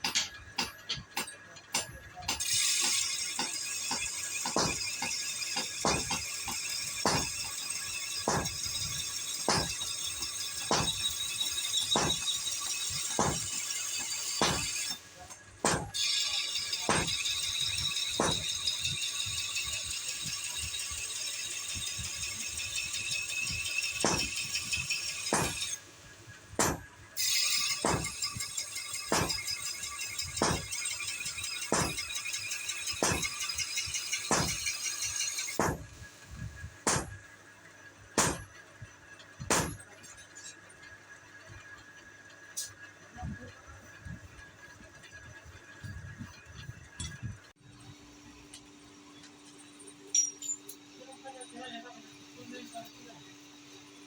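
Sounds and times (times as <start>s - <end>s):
hammer striking blade on anvil: 0.0s - 18.7s, 23.4s - 25.8s, 26.6s - 35.9s, 36.8s - 37.2s, 38.2s - 38.5s, 39.5s - 39.9s.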